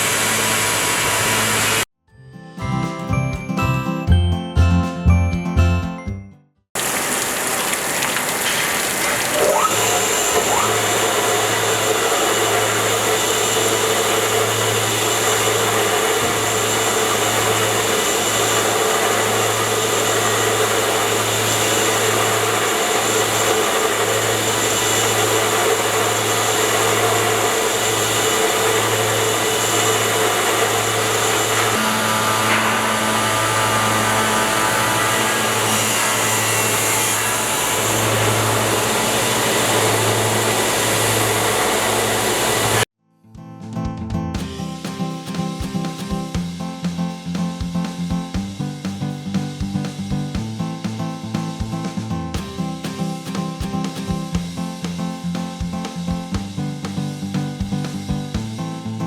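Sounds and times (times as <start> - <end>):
tile cutting machine whirring: 0.0 - 1.9, 6.8 - 42.9.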